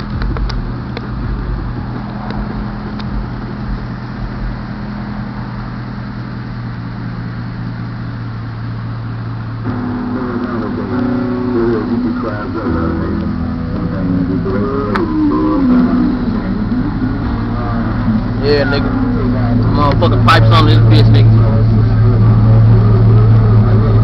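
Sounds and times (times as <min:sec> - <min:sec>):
car engine idling: 0:00.0 - 0:24.0
music with singing voice: 0:09.6 - 0:24.0.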